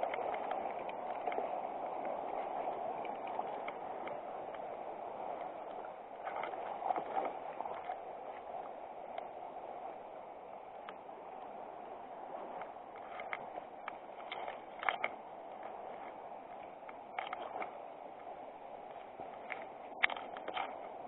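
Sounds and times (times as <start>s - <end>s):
faint clicks and knocks: 0.0s - 8.0s, 10.8s - 11.0s, 12.5s - 21.0s
river water running over stones: 0.0s - 21.0s.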